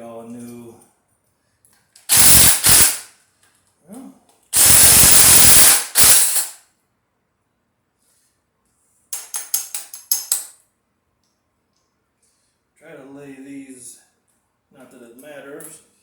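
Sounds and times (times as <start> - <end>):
compressed air hissing: 2.1 - 3.1, 4.6 - 6.6
sharp metal clicks: 9.2 - 10.6.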